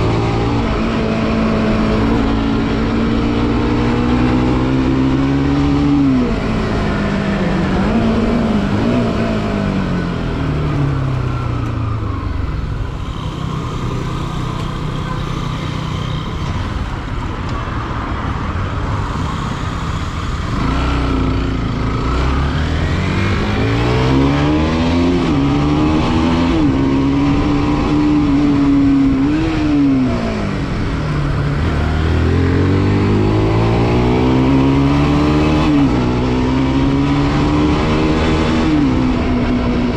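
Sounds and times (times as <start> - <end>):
motorcycle engine revving: 0.0 - 39.9
wind and road noise: 0.0 - 39.9.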